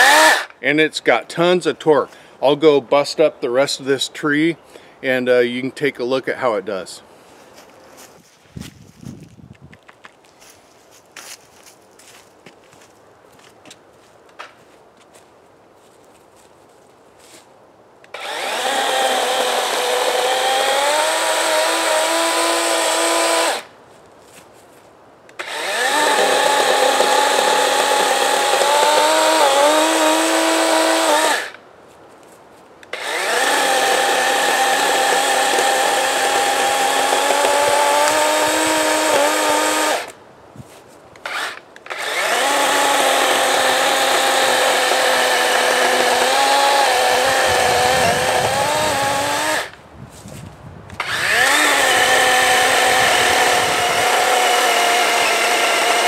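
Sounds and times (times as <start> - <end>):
battery chainsaw cutting limbs: 0.0 - 0.6, 18.1 - 23.7, 25.3 - 31.6, 32.9 - 40.2, 41.2 - 49.8, 50.9 - 56.0.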